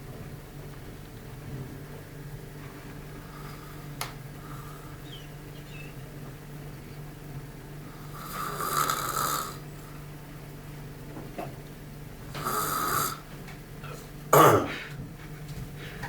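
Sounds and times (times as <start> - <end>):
steady low hum: 0.0 - 16.0
man snoring: 7.9 - 9.6, 12.4 - 13.3.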